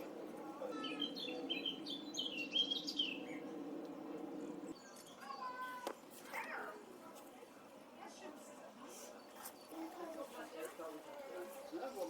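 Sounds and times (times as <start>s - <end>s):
birds chirping: 0.7s - 3.6s.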